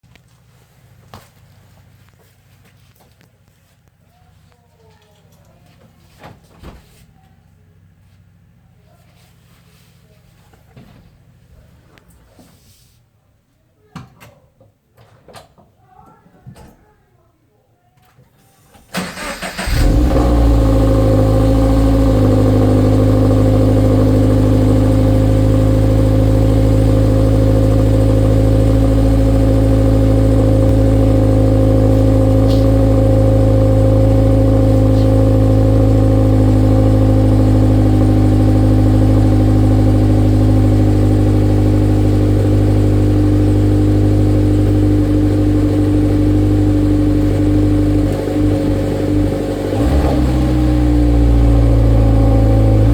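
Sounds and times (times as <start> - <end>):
car engine starting: 18.8 - 52.9
engine fast idle: 19.0 - 52.9.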